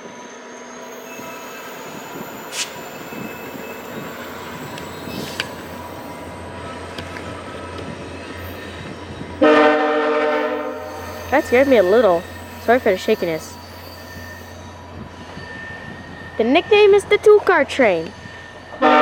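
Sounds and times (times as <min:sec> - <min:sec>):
train rolling rumble: 0:00.0 - 0:19.0
locomotive horn blast: 0:09.4 - 0:13.4, 0:18.8 - 0:19.0.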